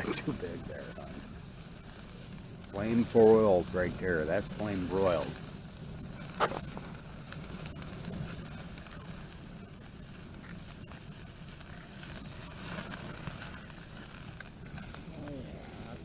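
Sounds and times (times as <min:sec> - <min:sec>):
campfire burning: 0:00.0 - 0:16.0
fire crackling: 0:00.0 - 0:16.0.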